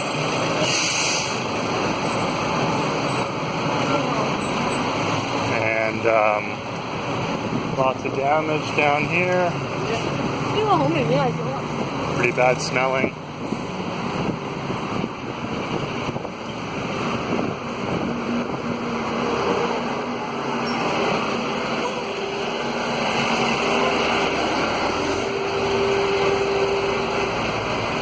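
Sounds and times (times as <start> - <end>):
street noise rushing hiss: 0.0 - 28.0.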